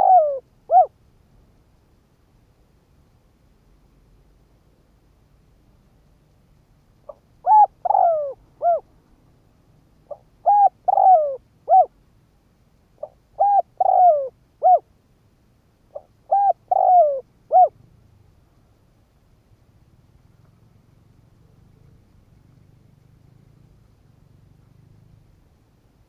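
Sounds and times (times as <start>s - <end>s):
dove cooing: 0.0s - 0.9s, 7.1s - 8.9s, 10.0s - 12.0s, 13.0s - 14.9s, 15.9s - 17.8s.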